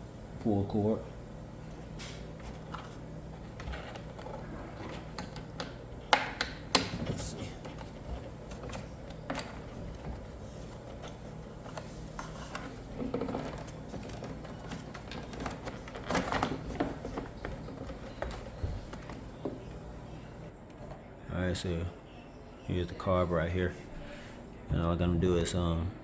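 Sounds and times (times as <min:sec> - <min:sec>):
plastic covers rattling: 0:02.0 - 0:19.6
hand tools clicking and tapping: 0:03.7 - 0:10.1.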